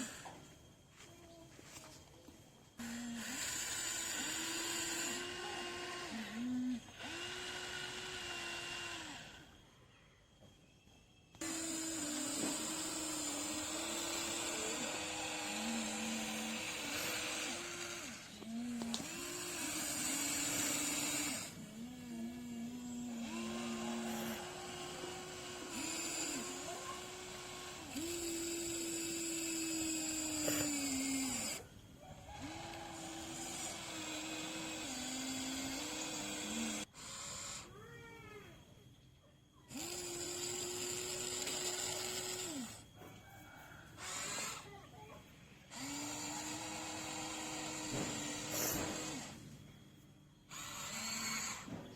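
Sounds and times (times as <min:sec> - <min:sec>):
electric motors whining: 0:00.0 - 0:10.6, 0:11.3 - 0:51.9.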